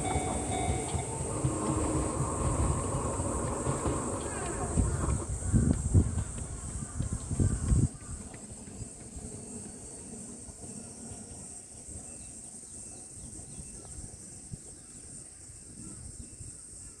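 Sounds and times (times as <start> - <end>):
low uneven rumble: 0.0 - 7.9
insect chorus: 0.0 - 17.0.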